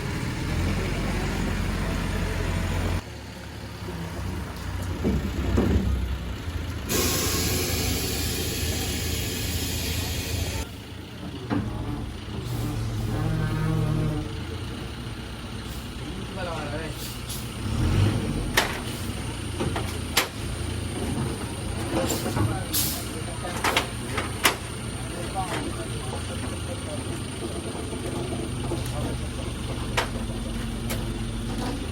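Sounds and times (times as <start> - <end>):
heavy truck engines humming: 0.0 - 31.9
loud even hiss: 6.9 - 10.6.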